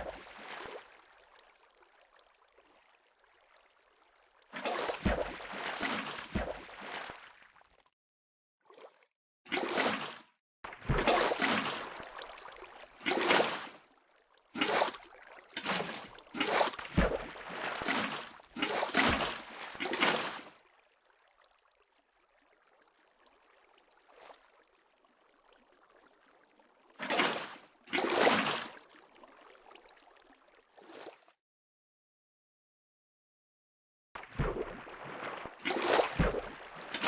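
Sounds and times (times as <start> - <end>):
water splashing and gurgling: 0.0 - 2.8, 4.4 - 7.8, 8.7 - 13.9, 14.5 - 20.7, 25.2 - 31.3, 34.2 - 37.0.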